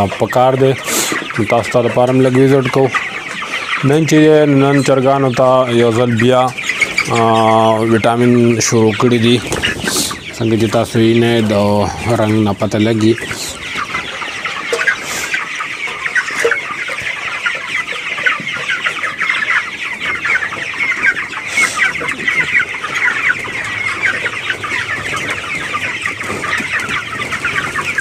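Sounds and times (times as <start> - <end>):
chickens cheeping and clucking: 0.0 - 28.0.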